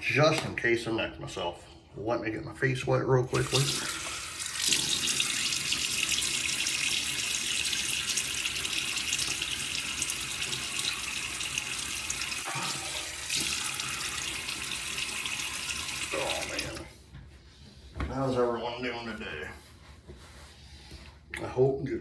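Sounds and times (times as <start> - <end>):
faucet running into sink: 3.4 - 16.9.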